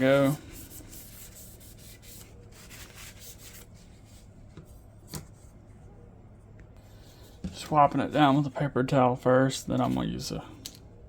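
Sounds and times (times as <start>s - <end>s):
paper towel scuffing metal parts: 0.0s - 5.6s.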